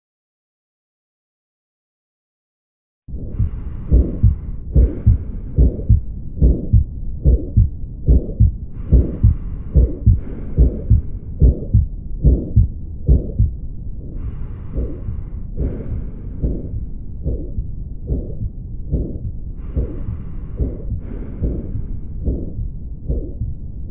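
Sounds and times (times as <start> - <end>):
heart murmur: 3.1 - 23.9
heartbeat through a stethoscope: 3.1 - 23.9.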